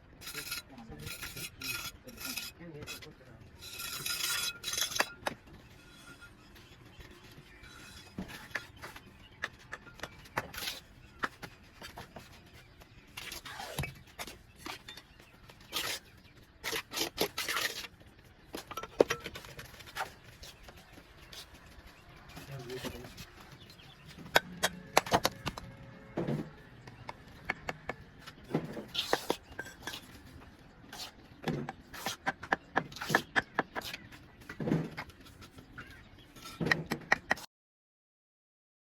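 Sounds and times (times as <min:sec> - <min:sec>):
trowel scraping mortar: 0:00.2 - 0:06.5, 0:10.4 - 0:12.0, 0:15.6 - 0:18.0, 0:26.2 - 0:35.6
trowel tapping mortar: 0:24.3 - 0:25.6, 0:26.8 - 0:30.1, 0:31.0 - 0:34.1
sharp taps and knocks: 0:26.8 - 0:29.5.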